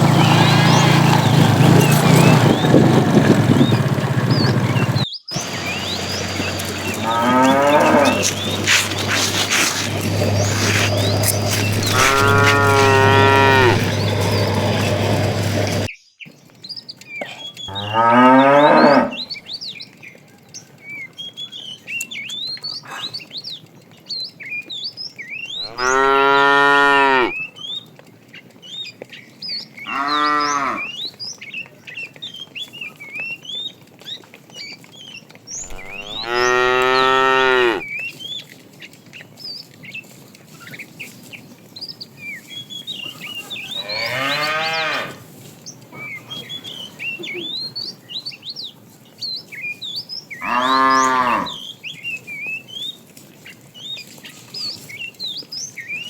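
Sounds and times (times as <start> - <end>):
small birds chirping: 0.0 - 56.0
cows mooing: 5.4 - 15.9, 17.7 - 19.4, 25.6 - 27.4, 29.9 - 31.0, 35.6 - 37.9, 43.5 - 45.3, 50.4 - 51.6.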